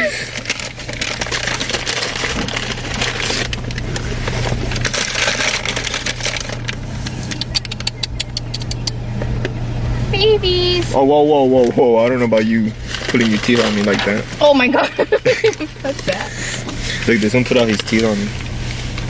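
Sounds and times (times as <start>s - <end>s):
car idling: 0.0s - 19.0s
rustling and rattling: 0.0s - 19.0s
sharp clicks: 5.5s - 9.6s.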